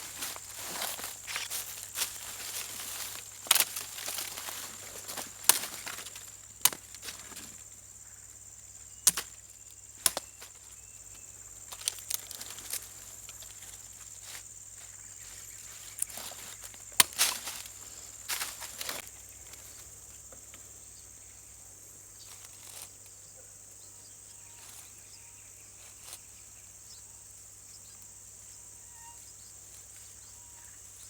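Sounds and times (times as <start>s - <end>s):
sharp snaps and clicks: 9.0s - 9.4s, 10.0s - 10.4s.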